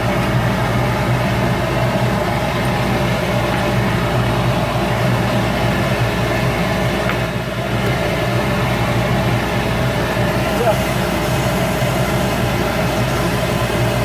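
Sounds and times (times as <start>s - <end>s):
wood lathe motor hum: 9.8s - 14.0s.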